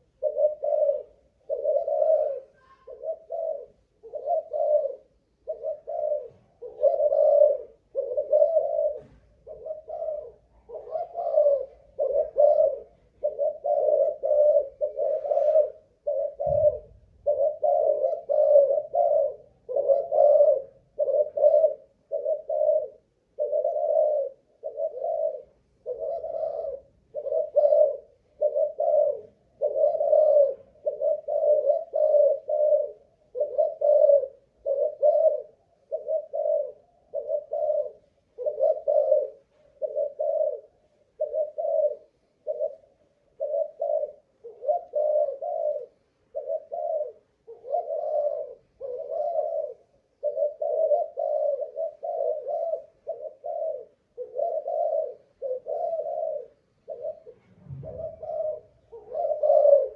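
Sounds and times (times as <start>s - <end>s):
dove cooing: 0.0s - 59.9s
low thump: 16.4s - 17.0s, 57.4s - 58.6s.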